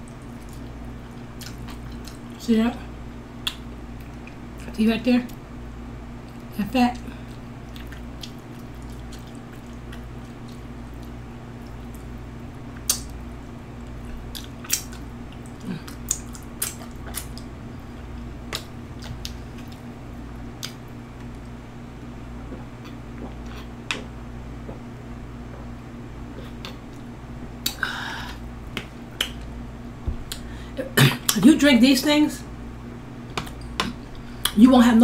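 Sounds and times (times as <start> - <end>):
person chewing: 0.1 - 2.4, 7.2 - 13.2, 13.8 - 21.6, 22.3 - 24.1, 25.5 - 29.4
wet mouth clicks and smacks: 3.4 - 4.4, 12.8 - 13.1, 14.3 - 17.5, 20.6 - 21.5, 28.7 - 29.4.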